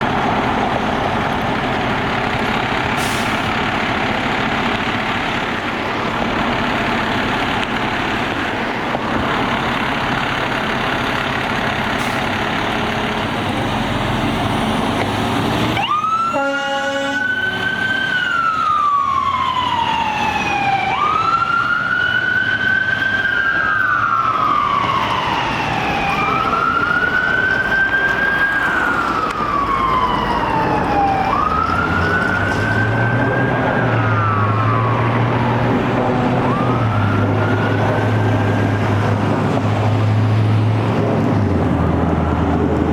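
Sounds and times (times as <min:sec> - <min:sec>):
electronic siren wailing: 0:15.7 - 0:39.2
loud steady horn blare: 0:16.1 - 0:17.7.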